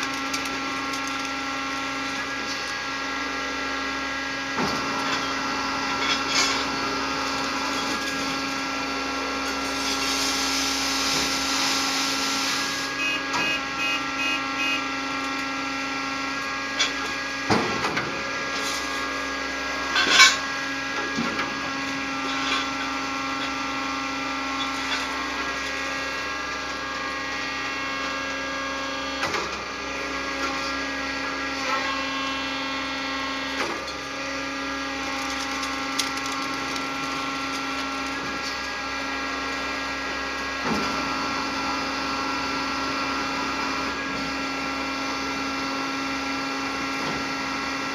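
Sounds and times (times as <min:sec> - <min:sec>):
hydraulic pump motor humming: 0:00.0 - 0:18.6
short beeps: 0:13.0 - 0:14.9.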